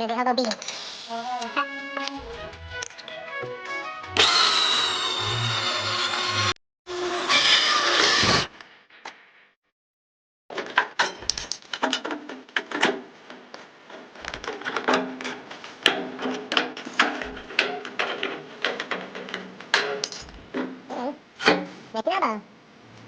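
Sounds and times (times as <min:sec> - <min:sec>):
sharp clicks and knocks: 0:10.5 - 0:20.8.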